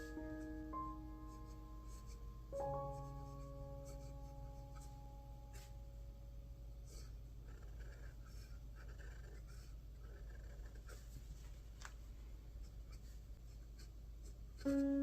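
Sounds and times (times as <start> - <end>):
fountain pen scratching on paper: 7.5 - 11.2.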